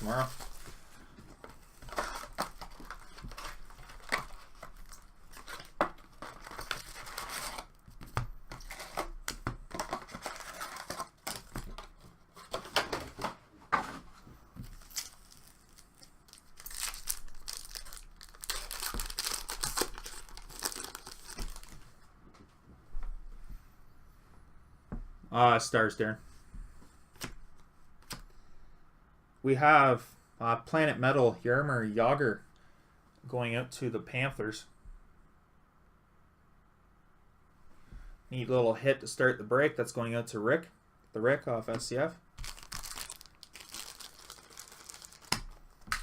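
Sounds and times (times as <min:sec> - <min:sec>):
card wrappers tearing and crinkling: 0:01.8 - 0:07.8, 0:08.5 - 0:11.9, 0:14.7 - 0:21.8, 0:42.4 - 0:46.0.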